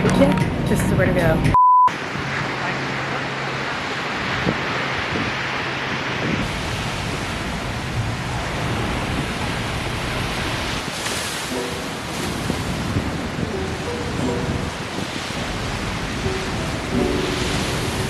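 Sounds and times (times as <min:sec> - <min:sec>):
ocean surf rushing: 0:11.0 - 0:18.0.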